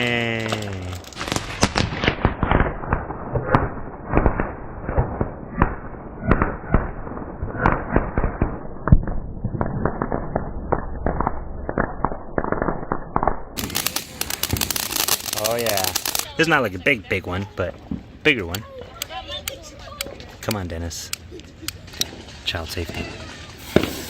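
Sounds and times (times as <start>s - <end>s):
loud firework bangs: 0.0s - 11.4s, 13.6s - 16.3s, 21.8s - 24.0s
fireworks popping and crackling: 0.0s - 24.0s.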